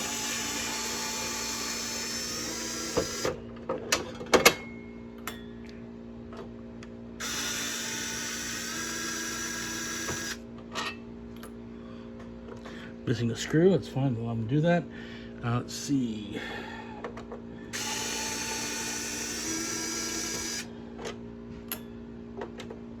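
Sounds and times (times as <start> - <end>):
power screwdriver running: 0.0 - 3.4, 7.2 - 10.4, 17.7 - 20.7.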